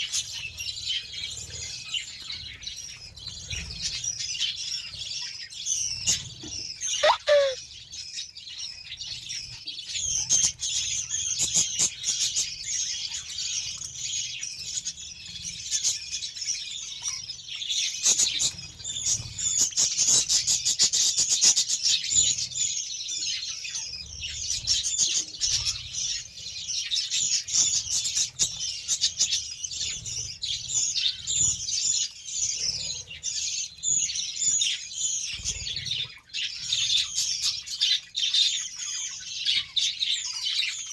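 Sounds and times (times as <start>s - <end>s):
budgerigars chattering and chirping: 7.0s - 7.6s.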